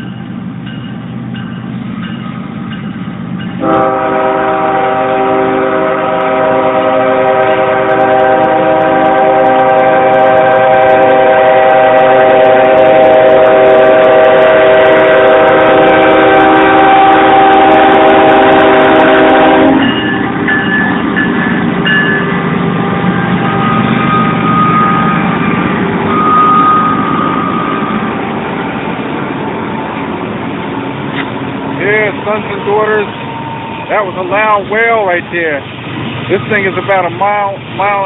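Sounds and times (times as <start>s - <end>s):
rumble of passing train: 0.0s - 38.0s
locomotive air horn wailing: 3.6s - 21.0s, 22.8s - 28.2s, 31.8s - 35.6s.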